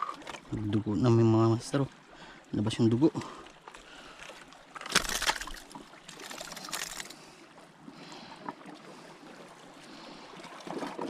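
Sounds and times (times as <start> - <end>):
water trickling and lapping: 0.0 - 11.0.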